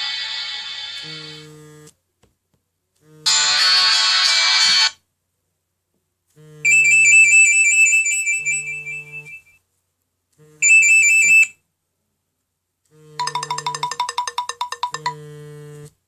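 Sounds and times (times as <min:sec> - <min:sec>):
phone vibration buzzing: 0:01.0 - 0:02.0, 0:06.4 - 0:07.2, 0:08.4 - 0:09.5, 0:12.9 - 0:16.0
warbling electronic ringtone: 0:06.7 - 0:09.5, 0:13.2 - 0:15.2.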